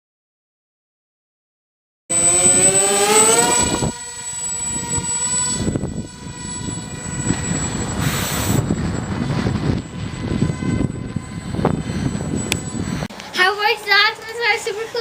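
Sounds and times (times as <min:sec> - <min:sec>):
electric motor propeller whine: 0:02.1 - 0:14.0
wind buffeting microphone: 0:02.4 - 0:13.2.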